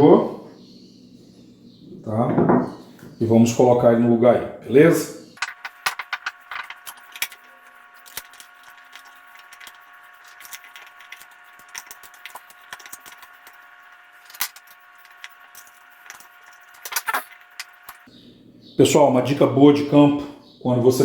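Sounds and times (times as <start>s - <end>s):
clicks taps and small rattles: 5.4s - 13.5s.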